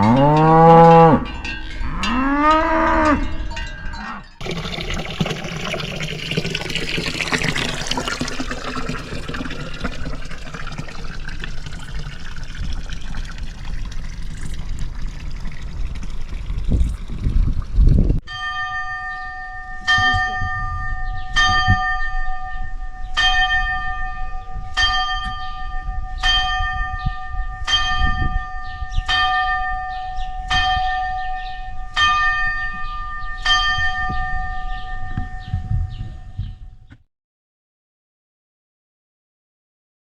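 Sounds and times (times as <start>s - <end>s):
church bell tolling: 18.3s - 35.0s.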